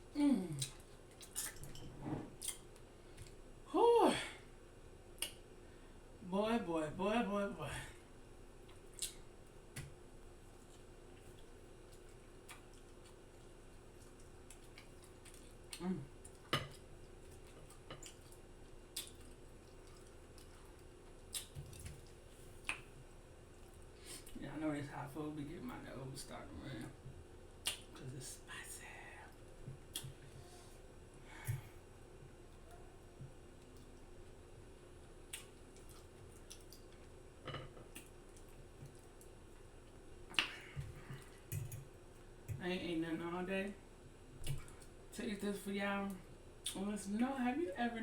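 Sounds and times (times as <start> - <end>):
wet chewing clicks and smacks: 0.6 - 1.8, 5.2 - 5.5, 8.6 - 24.4, 27.6 - 28.0, 29.8 - 30.2, 35.2 - 37.2, 37.8 - 40.6.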